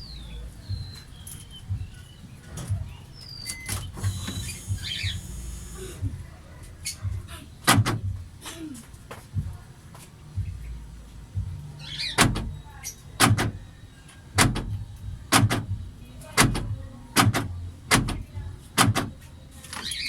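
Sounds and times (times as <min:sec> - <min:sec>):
door lock clicks and knocks: 0:07.7 - 0:08.1, 0:12.2 - 0:12.6, 0:13.2 - 0:13.6, 0:14.4 - 0:15.8, 0:16.4 - 0:19.2.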